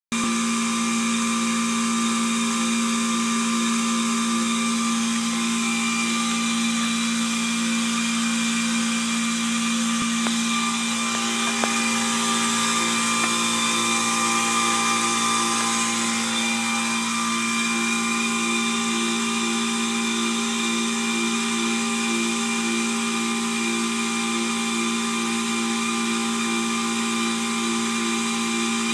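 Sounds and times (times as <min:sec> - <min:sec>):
air conditioner motor whir: 0:00.2 - 0:28.9
pulsing tone: 0:04.9 - 0:21.1.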